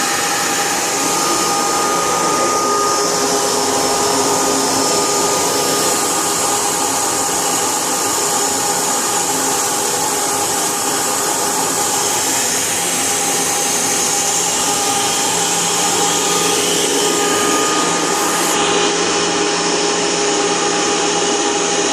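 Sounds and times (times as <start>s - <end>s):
vacuum cleaner running: 0.0s - 21.9s.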